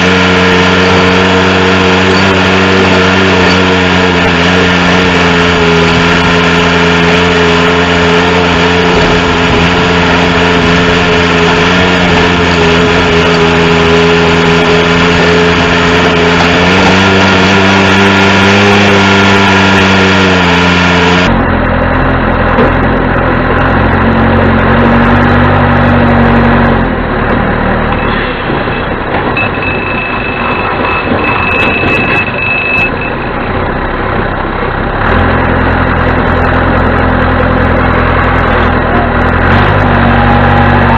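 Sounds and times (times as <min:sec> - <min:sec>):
diesel engine running and revving: 0:00.0 - 0:40.9
thin high steady whine: 0:28.0 - 0:33.5.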